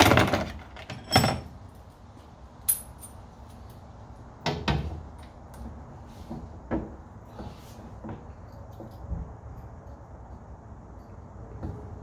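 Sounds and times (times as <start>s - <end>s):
metal ringing clink: 2.7s - 3.2s.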